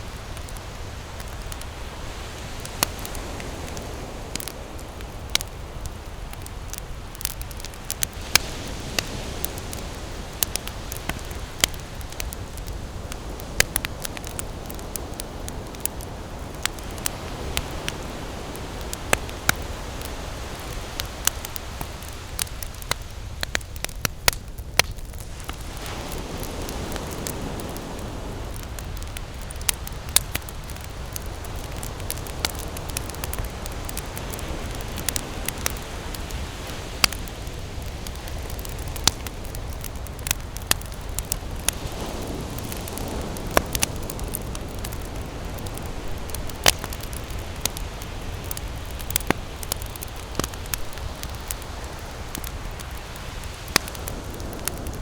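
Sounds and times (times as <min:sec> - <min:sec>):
campfire crackling and popping: 0:00.0 - 0:55.0
fire low rush: 0:24.5 - 0:55.0.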